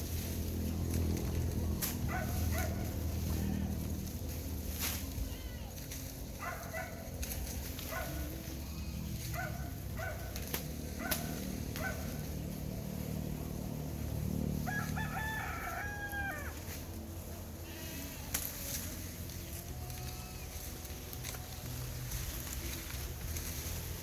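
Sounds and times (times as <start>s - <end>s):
steady low rumble: 0.0s - 24.0s
rooster crowing: 14.6s - 16.8s
fowl calling: 14.7s - 16.7s.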